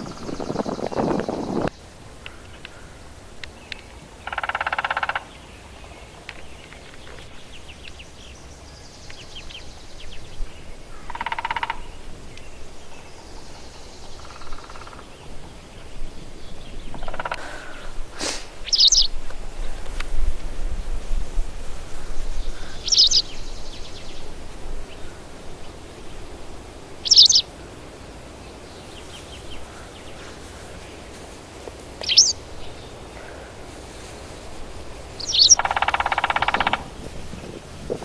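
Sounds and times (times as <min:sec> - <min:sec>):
woodpecker drumming on tree: 0:00.0 - 0:02.9, 0:03.7 - 0:05.4, 0:11.0 - 0:12.0, 0:14.1 - 0:15.1, 0:16.9 - 0:17.9, 0:35.2 - 0:38.0
small birds chirping and trilling: 0:00.0 - 0:04.5, 0:05.1 - 0:18.0, 0:18.6 - 0:19.8, 0:22.0 - 0:31.4, 0:32.0 - 0:37.6.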